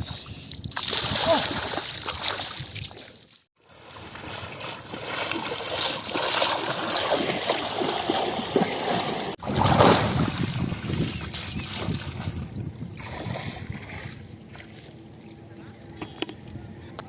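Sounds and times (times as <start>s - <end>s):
water splashing in a river: 0.8s - 15.0s.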